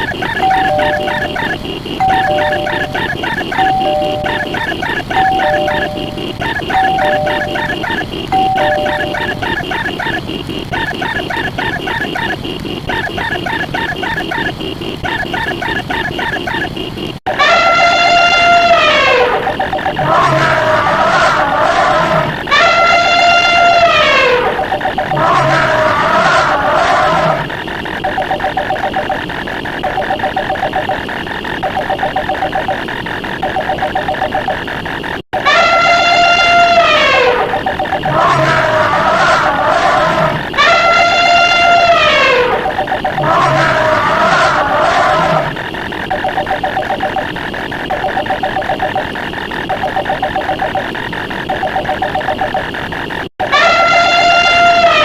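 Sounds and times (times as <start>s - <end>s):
electronic telephone ring: 0.0s - 10.2s, 28.0s - 29.2s, 29.8s - 31.0s, 33.4s - 34.6s, 37.5s - 38.1s, 49.7s - 50.9s
fast steady clicks: 0.0s - 21.0s, 21.6s - 35.2s, 37.0s - 43.7s, 45.2s - 53.3s.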